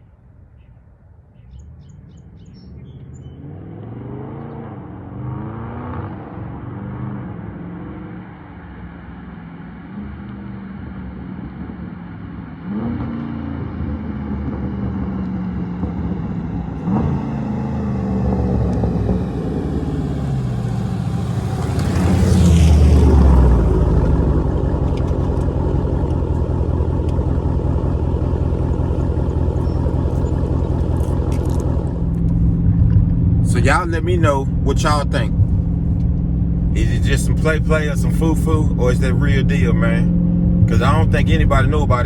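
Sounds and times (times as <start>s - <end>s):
car engine accelerating: 1.5s - 42.0s
exhaust crackles and pops: 18.2s - 42.0s.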